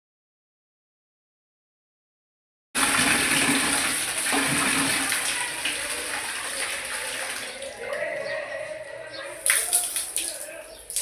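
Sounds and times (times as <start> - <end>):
water rushing from plumbing: 2.8 - 7.8.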